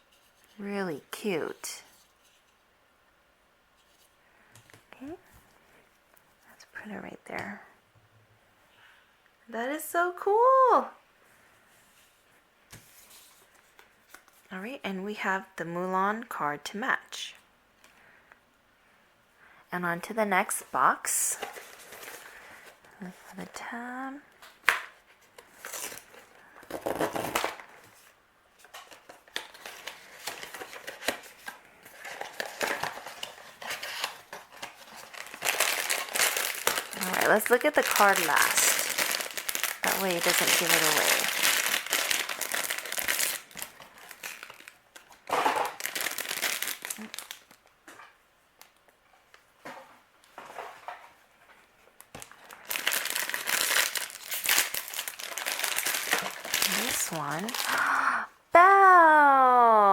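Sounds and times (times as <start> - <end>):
cardboard tearing and rustling: 25.6 - 27.9, 28.8 - 47.5, 52.2 - 57.7
packaging clicks and scrapes: 28.6 - 47.4, 52.2 - 57.7.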